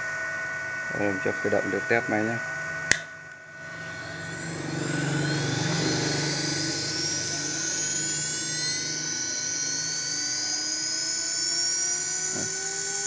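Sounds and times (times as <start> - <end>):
spindle whine rising in pitch: 0.0 - 13.0
low hum: 2.4 - 10.5.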